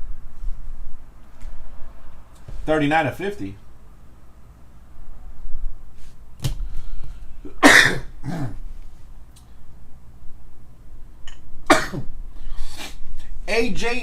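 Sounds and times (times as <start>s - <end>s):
man coughing: 7.5s - 8.6s, 11.7s - 12.1s.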